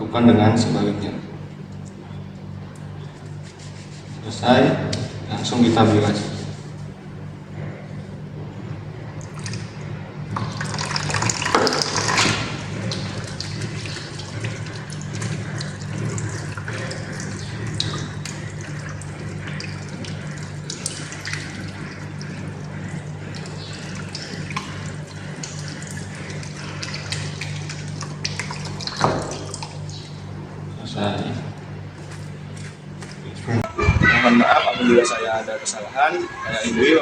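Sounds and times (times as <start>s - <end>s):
steady low hum: 0.0s - 37.0s
water running from a tap: 9.2s - 30.2s
water splashing over hands: 10.4s - 30.0s.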